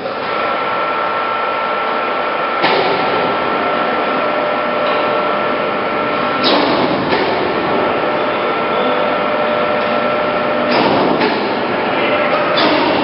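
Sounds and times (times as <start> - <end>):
lathe running with whine: 0.0 - 13.0
machine clunk: 2.6 - 3.5, 4.8 - 5.3, 6.1 - 8.0, 9.5 - 13.0.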